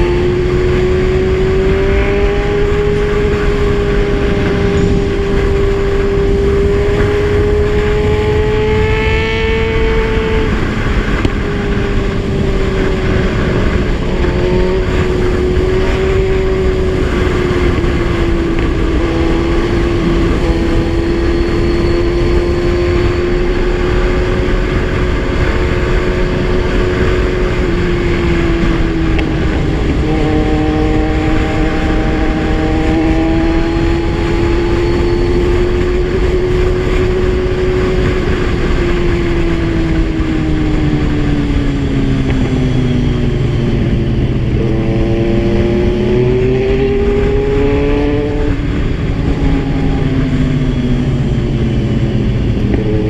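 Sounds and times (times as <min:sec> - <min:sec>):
motorcycle engine running: 0:00.0 - 0:53.0.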